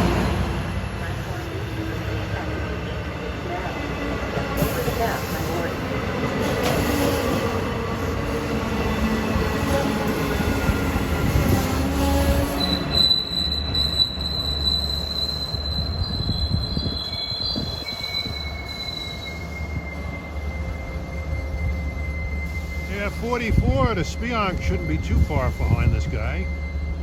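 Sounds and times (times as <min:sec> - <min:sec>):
train engine rumble: 0:00.0 - 0:27.0
high wheel squeal: 0:08.9 - 0:27.0.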